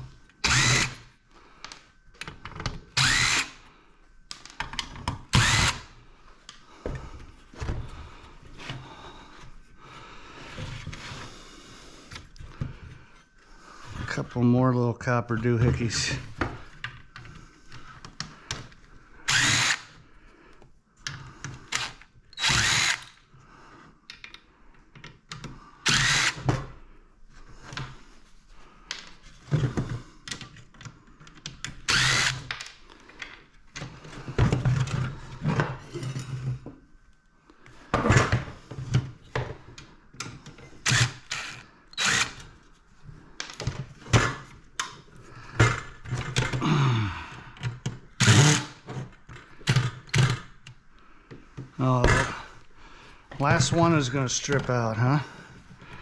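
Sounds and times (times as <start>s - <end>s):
power drill bursts: 0.4s - 1.1s, 3.0s - 3.6s, 5.3s - 5.9s, 19.3s - 20.0s, 21.7s - 23.2s, 25.8s - 26.5s, 31.9s - 32.5s, 40.8s - 42.5s, 48.2s - 48.8s.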